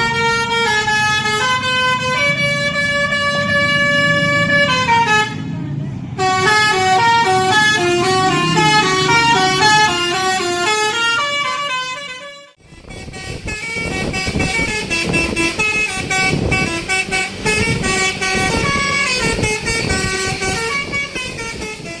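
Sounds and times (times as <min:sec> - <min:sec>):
bus musical horn melody: 0:00.0 - 0:05.6, 0:06.2 - 0:22.0.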